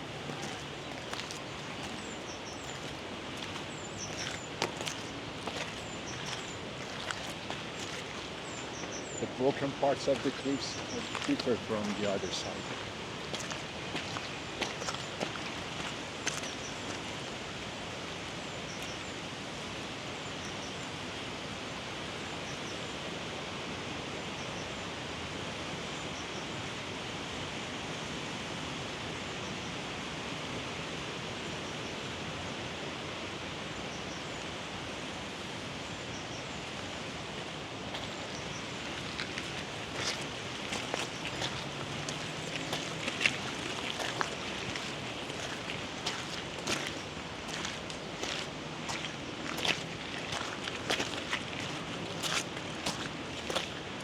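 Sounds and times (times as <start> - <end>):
mountain river rushing: 0.0 - 20.0, 36.6 - 54.0.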